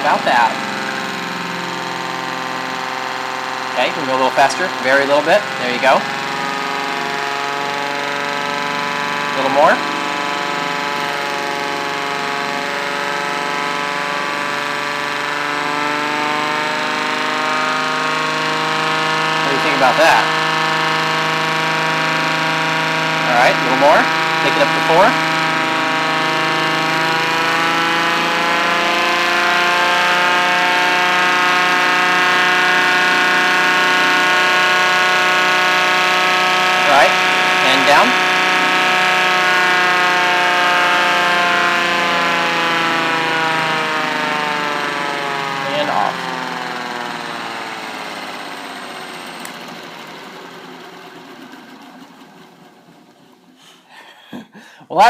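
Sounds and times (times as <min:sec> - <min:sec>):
wooden siren wailing: 0:00.0 - 0:55.0.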